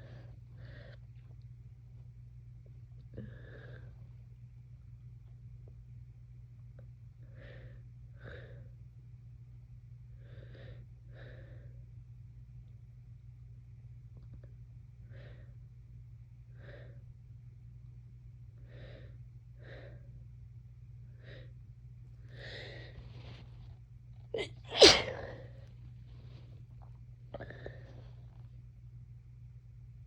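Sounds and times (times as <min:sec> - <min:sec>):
person sneezing: 0:24.4 - 0:25.5.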